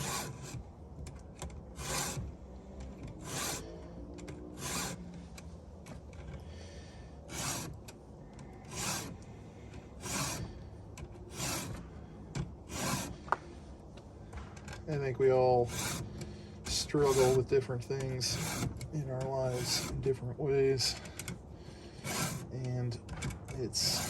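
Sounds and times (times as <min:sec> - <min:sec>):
file rasping on saw chain: 0:00.0 - 0:00.6, 0:01.8 - 0:02.3, 0:03.1 - 0:05.1, 0:07.3 - 0:07.8, 0:08.6 - 0:09.2, 0:10.0 - 0:11.9, 0:12.6 - 0:13.3, 0:15.0 - 0:23.0, 0:23.6 - 0:24.0.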